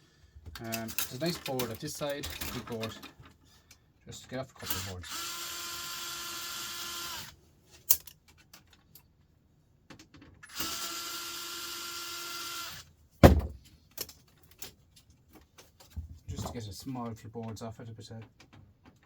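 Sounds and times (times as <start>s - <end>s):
cordless drill running: 4.6s - 7.4s, 10.4s - 12.9s
loud thump: 13.2s - 13.6s.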